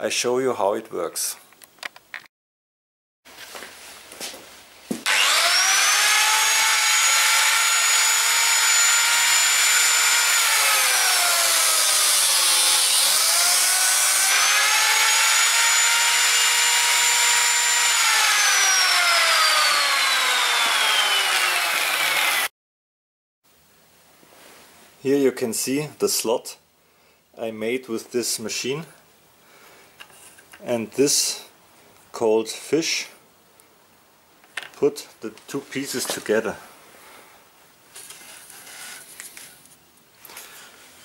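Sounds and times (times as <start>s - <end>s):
biscuit joiner motor whine: 5.0s - 22.5s.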